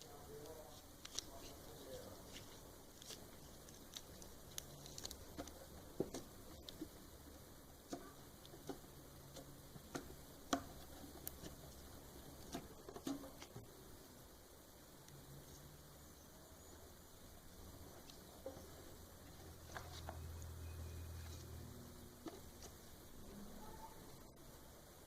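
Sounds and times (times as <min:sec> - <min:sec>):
slime squishing: 0:00.0 - 0:07.3, 0:07.9 - 0:13.6.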